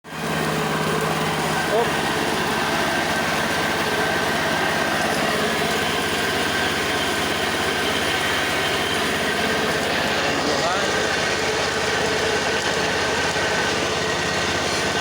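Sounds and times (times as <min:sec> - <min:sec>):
dehulling machine motor running: 0:00.1 - 0:15.0.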